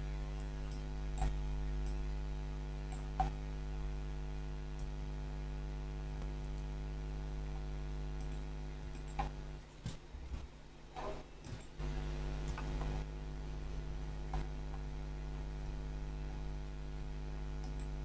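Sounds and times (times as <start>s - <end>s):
electrical mains hum: 0.0s - 18.0s
faint clicks: 17.6s - 18.0s.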